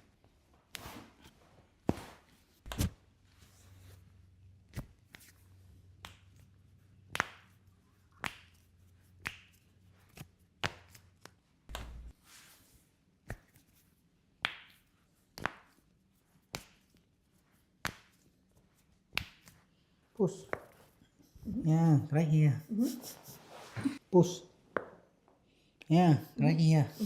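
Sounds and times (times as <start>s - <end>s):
hands slapping a body: 1.8s - 3.0s, 4.7s - 6.4s, 7.0s - 12.2s, 13.2s - 13.8s, 14.4s - 15.8s, 16.4s - 19.7s.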